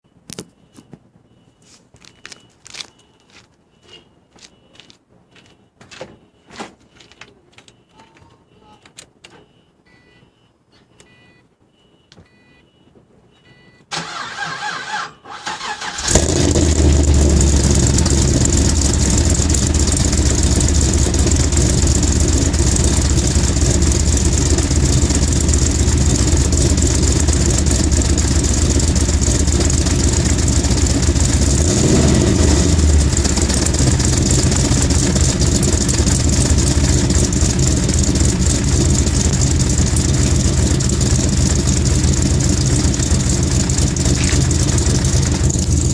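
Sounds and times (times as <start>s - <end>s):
short electronic beeps: 0.1s - 7.1s, 9.4s - 13.8s
car starter cranking: 13.9s - 31.6s
car engine idling: 15.6s - 45.9s.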